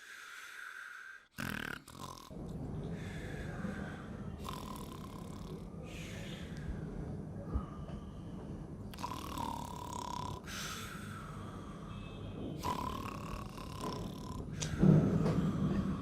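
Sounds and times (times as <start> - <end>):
person snoring with whistling tone: 4.4 - 5.6, 9.0 - 10.8, 12.6 - 14.4.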